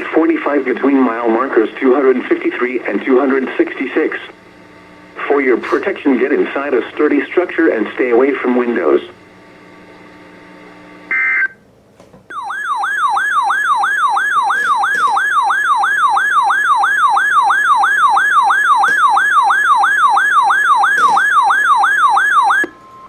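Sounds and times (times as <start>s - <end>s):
emergency alert warbling tone: 12.3s - 23.0s.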